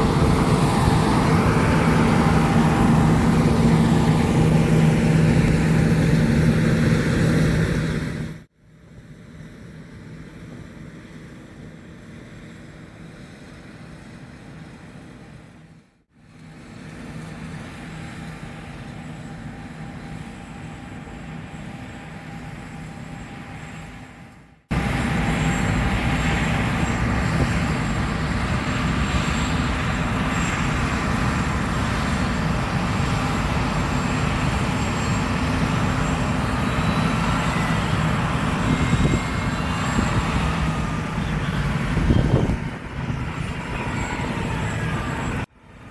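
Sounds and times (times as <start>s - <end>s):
combine harvester running: 0.0s - 14.3s, 16.4s - 45.9s
thin high whine: 18.6s - 45.5s.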